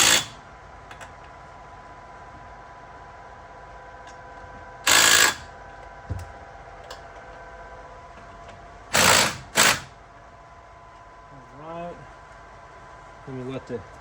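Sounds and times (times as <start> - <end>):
ratcheting tool bursts: 0.0 - 0.4, 4.9 - 5.5, 8.9 - 9.9
steady hum: 0.0 - 14.0.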